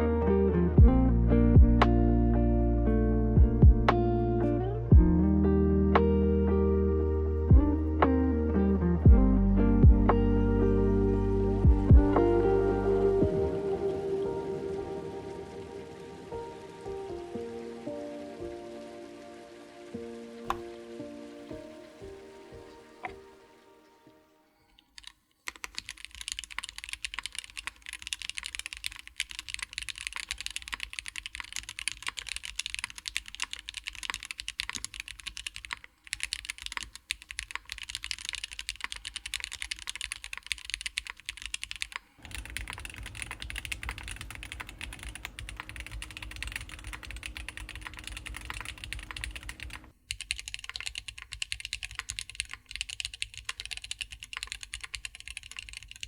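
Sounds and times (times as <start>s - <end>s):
mechanical keyboard typing: 24.9s - 56.0s.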